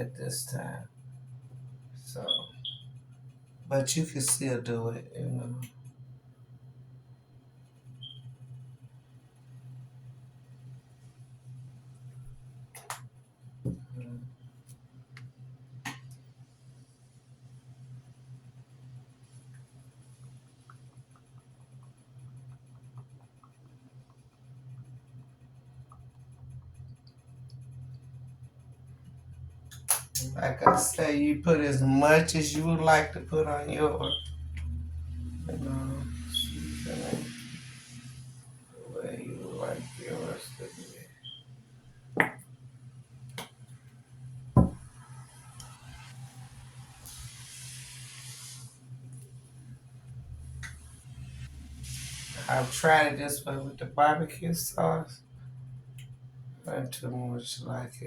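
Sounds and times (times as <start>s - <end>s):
steady low hum: 0.0s - 58.0s
seasoning shaker hissing: 35.4s - 41.4s, 45.0s - 49.3s, 51.0s - 53.2s.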